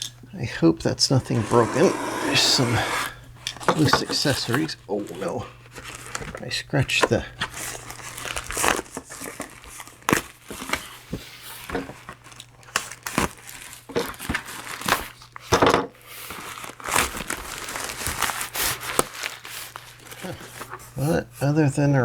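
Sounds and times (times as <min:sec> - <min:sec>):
packing material crumpling and tearing: 0:03.6 - 0:06.6, 0:07.2 - 0:21.1.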